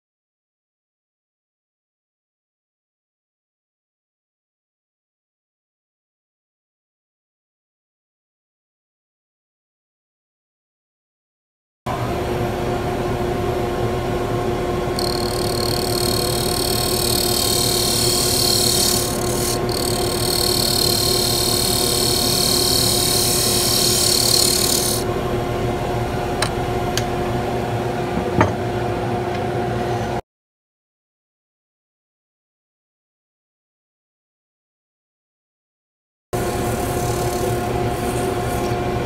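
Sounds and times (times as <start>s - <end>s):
wood lathe motor hum: 14.8s - 27.1s, 36.4s - 39.0s
hiss of wood being turned: 15.0s - 25.0s, 36.4s - 38.8s.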